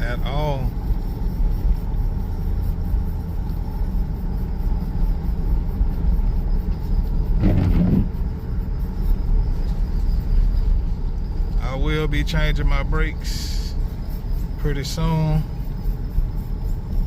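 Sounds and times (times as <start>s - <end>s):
engine and road rumble in car: 0.0s - 17.0s.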